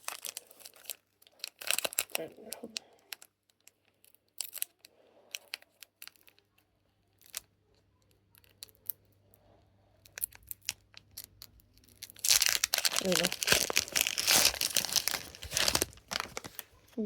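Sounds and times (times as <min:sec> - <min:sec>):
foil pack crinkling: 0:00.0 - 0:06.5, 0:10.0 - 0:17.0.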